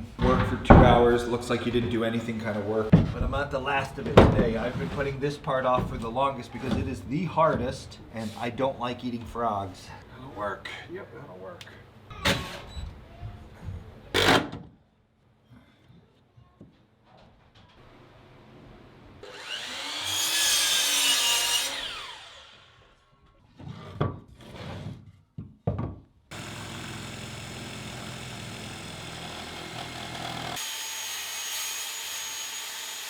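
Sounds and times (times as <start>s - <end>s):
power saw cutting wood: 19.2s - 23.0s, 26.3s - 33.0s.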